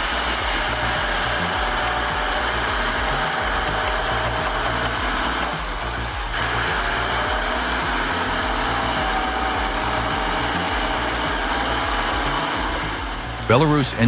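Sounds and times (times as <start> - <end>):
music with pulsing bass: 0.0 - 14.0
tractor engine running: 0.0 - 14.0.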